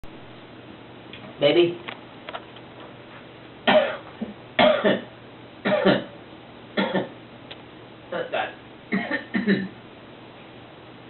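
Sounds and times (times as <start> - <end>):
person coughing: 3.7 - 6.1, 6.8 - 7.2, 8.1 - 9.8.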